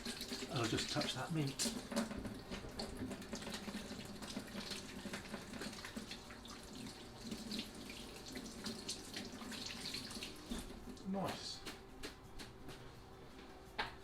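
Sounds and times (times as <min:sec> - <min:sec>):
tap running into sink: 0:00.0 - 0:06.2.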